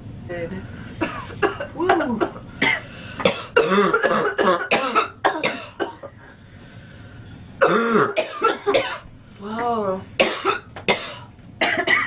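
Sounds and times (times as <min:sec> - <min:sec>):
girl coughing rapidly: 0:01.0 - 0:06.2, 0:07.6 - 0:09.1, 0:10.2 - 0:12.0.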